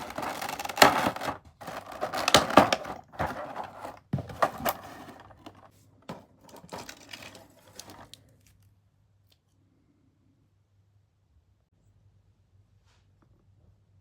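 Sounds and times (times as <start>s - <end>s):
plastic packaging rustling: 0.0s - 8.2s.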